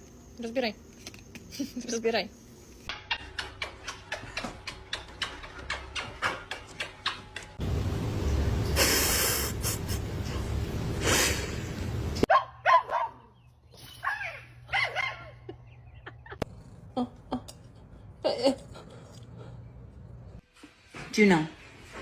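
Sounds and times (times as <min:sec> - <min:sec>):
dog barking: 0:12.3 - 0:13.3, 0:14.7 - 0:15.4.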